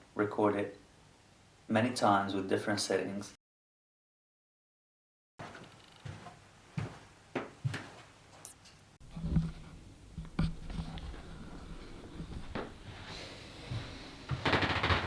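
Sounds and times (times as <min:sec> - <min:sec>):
low steady hum: 0:09.0 - 0:14.4.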